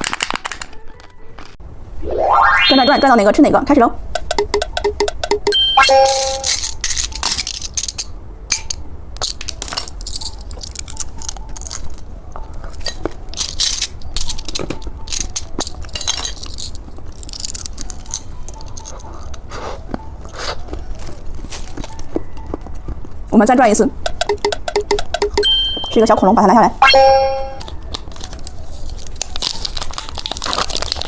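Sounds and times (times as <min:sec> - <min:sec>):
plastic candy wrapper crinkling: 0:00.0 - 0:01.6, 0:06.4 - 0:08.1, 0:09.2 - 0:19.4, 0:27.6 - 0:31.0.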